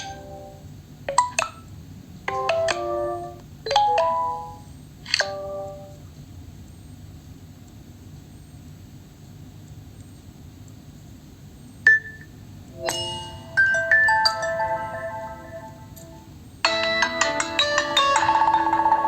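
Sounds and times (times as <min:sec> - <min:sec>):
smartphone ringtone melody: 0:00.0 - 0:01.5, 0:02.3 - 0:04.7, 0:05.3 - 0:06.0, 0:12.8 - 0:19.0
ringtone with chords: 0:00.0 - 0:01.6, 0:02.3 - 0:06.0, 0:12.8 - 0:19.0.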